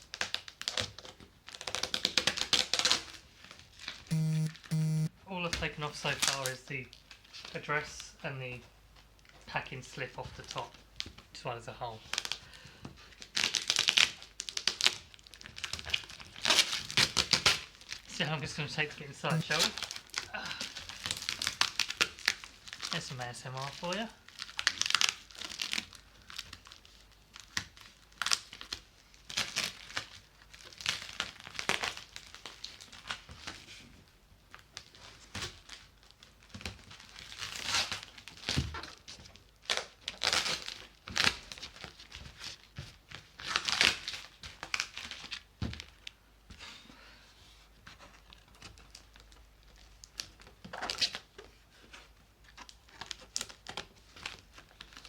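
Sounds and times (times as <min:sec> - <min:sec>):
cardboard parcel being torn open: 0:00.1 - 0:03.2, 0:13.2 - 0:18.1, 0:19.4 - 0:22.9, 0:24.3 - 0:33.6, 0:34.5 - 0:39.0, 0:39.6 - 0:42.2, 0:43.4 - 0:45.8, 0:50.1 - 0:51.3, 0:52.9 - 0:55.0
tape and packaging crinkling: 0:24.3 - 0:33.6.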